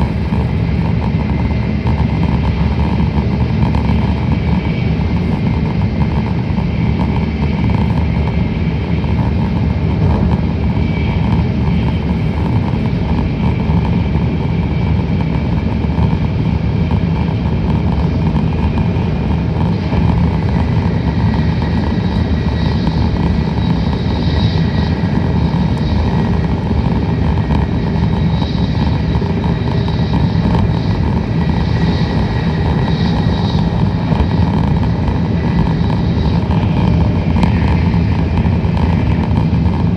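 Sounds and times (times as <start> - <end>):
wheels rumbling on rail: 0.0 - 39.9.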